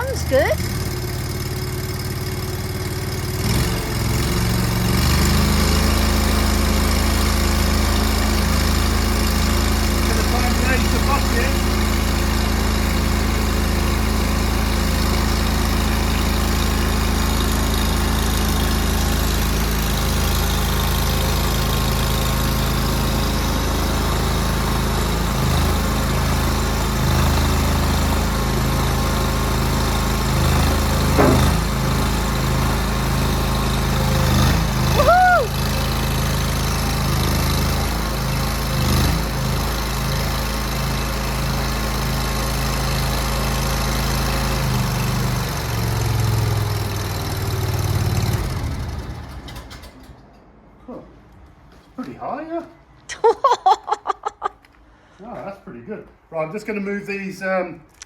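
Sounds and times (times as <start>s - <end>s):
small petrol engine running: 0.0s - 50.3s
clunks: 30.9s - 32.5s.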